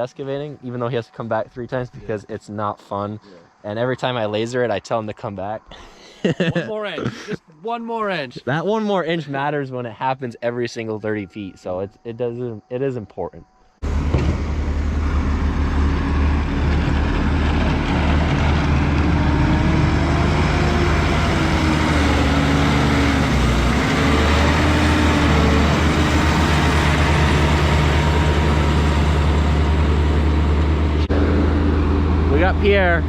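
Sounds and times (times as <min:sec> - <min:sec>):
heavy machinery engine humming: 0:13.8 - 0:33.0.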